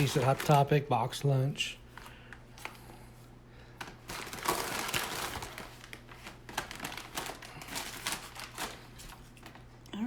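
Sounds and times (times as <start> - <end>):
packaging crinkling and rustling: 0.0 - 1.2, 3.7 - 9.8.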